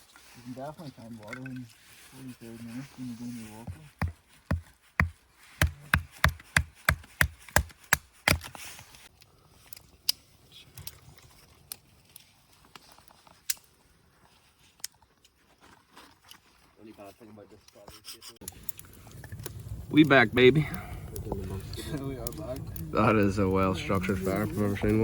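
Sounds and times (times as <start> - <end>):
wood being chopped: 3.8 - 8.6.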